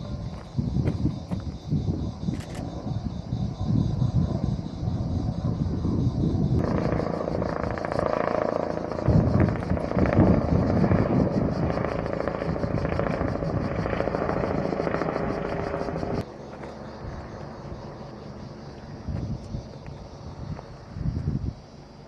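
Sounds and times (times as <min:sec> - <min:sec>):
helicopter rotor chopping: 0:00.0 - 0:20.8
low rumble: 0:01.8 - 0:16.2.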